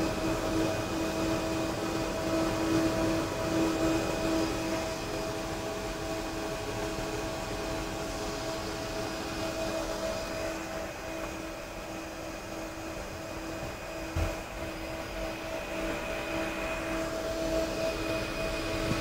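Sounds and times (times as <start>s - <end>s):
turbine whine and hum: 0.0s - 19.0s.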